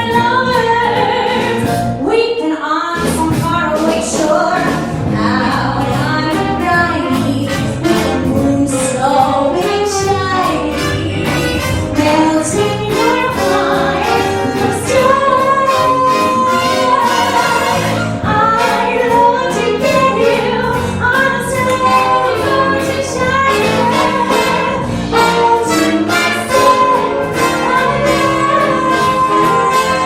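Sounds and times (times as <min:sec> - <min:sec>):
music with singing voices: 0:00.0 - 0:30.0
steady beat: 0:11.0 - 0:30.0.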